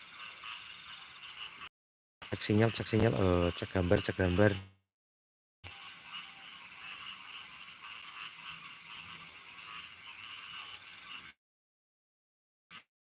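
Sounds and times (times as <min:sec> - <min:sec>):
insects chirring: 0:00.0 - 0:01.7, 0:02.3 - 0:04.6, 0:05.7 - 0:11.2.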